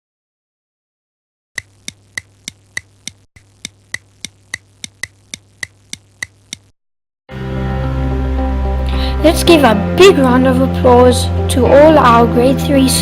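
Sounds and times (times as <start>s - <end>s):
sharp ticks: 1.6s - 6.7s.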